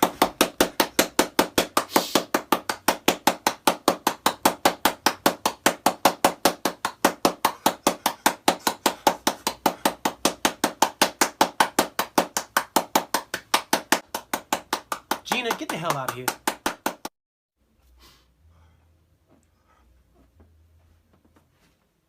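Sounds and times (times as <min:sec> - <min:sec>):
rapid sharp knocking: 0:00.0 - 0:17.1.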